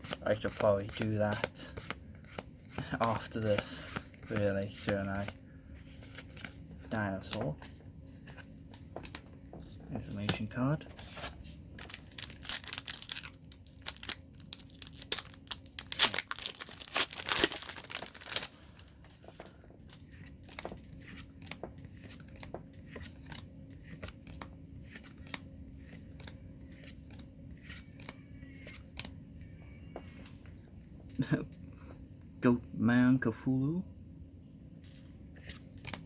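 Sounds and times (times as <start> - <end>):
foil wrapper tearing and crinkling: 11.8 - 18.6.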